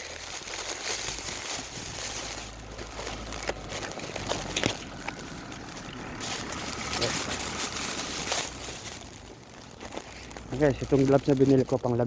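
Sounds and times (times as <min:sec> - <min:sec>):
rustling and crinkling: 0:00.0 - 0:12.0.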